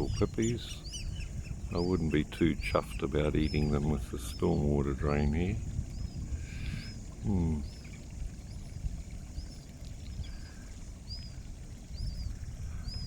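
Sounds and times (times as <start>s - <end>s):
small birds chirping: 0.0s - 13.0s
wind rumble on microphone: 0.0s - 13.0s
man humming: 7.2s - 7.7s.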